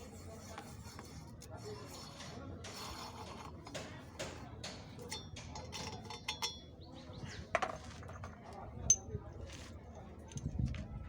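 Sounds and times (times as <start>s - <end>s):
hand tap cutting metal threads: 3.7s - 5.7s.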